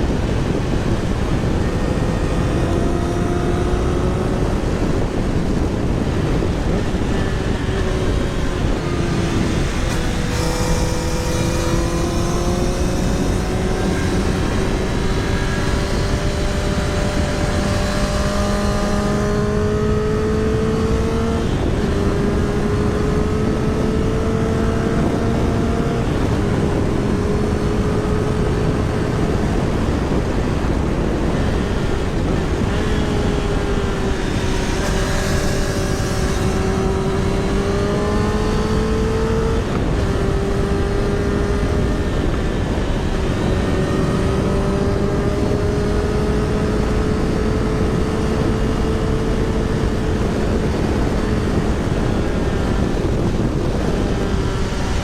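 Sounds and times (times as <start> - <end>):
motorcycle engine running: 0.0 - 55.0
wind noise over microphone: 0.0 - 55.0.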